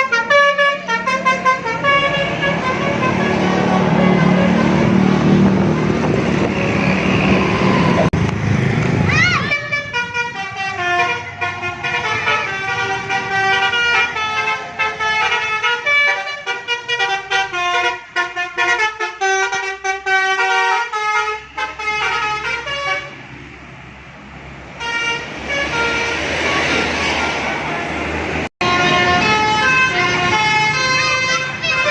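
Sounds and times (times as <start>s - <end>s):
musical bus air horn melody: 0.0s - 5.1s, 9.5s - 23.2s, 24.8s - 27.4s, 28.6s - 31.9s.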